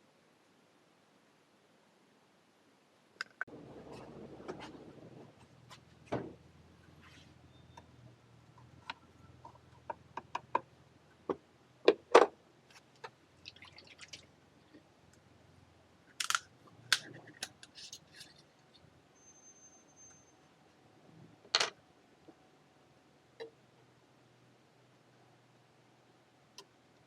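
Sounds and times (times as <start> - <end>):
crackly rustle: 3.3 - 7.4.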